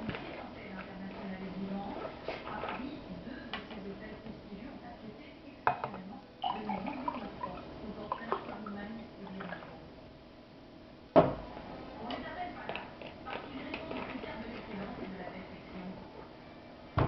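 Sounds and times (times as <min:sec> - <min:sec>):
faint voices talking: 0:00.0 - 0:10.0.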